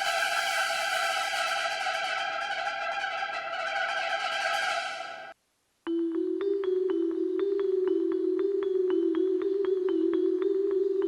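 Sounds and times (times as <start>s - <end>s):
held low synth note: 0.0s - 5.4s
sustained synth strings: 0.0s - 5.4s.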